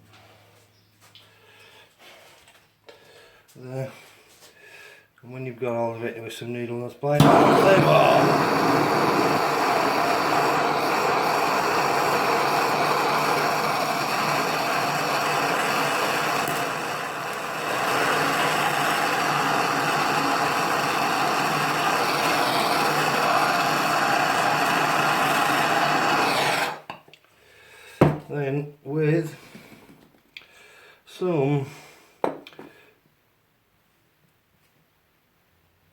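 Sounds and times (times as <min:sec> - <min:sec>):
small power tool running: 0:07.2 - 0:26.8.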